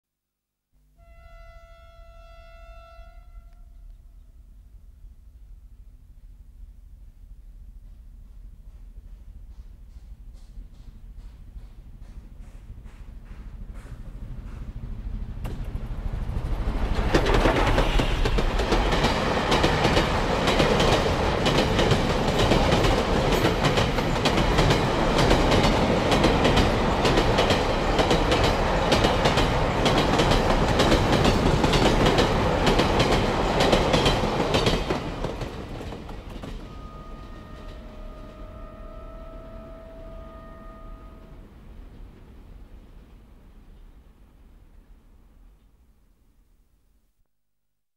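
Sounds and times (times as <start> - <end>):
train wheels clattering: 7.8 - 38.4.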